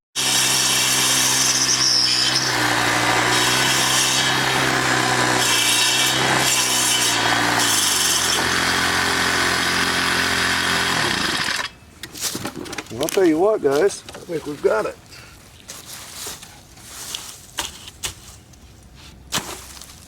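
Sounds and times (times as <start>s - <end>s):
saw blades grinding wood: 0.2s - 11.8s.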